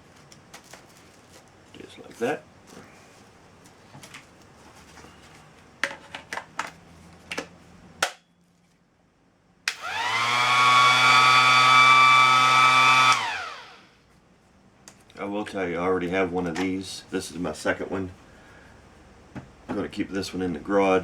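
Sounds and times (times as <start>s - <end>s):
orbital sander motor whining: 9.7s - 13.8s.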